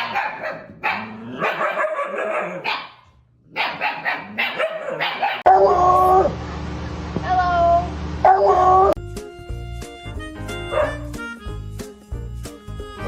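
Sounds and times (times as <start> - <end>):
dog barking and yipping: 0.0 - 6.3, 10.7 - 11.0
music: 9.0 - 13.0.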